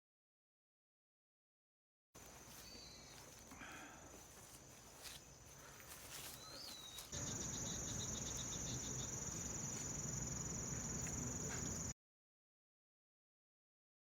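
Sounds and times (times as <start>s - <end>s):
insects trilling: 2.2s - 11.9s.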